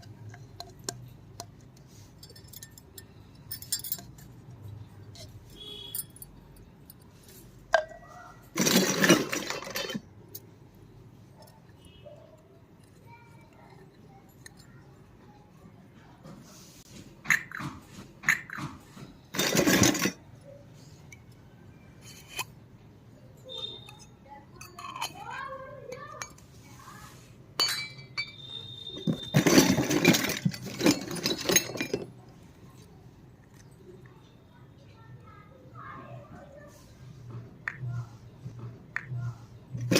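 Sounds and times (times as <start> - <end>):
toy kitchen pieces clinking: 0.0 - 10.6, 11.4 - 15.3, 19.2 - 21.4, 22.0 - 22.6, 23.4 - 26.5, 27.6 - 34.1
toy pieces rattling: 8.5 - 10.0, 29.0 - 32.2.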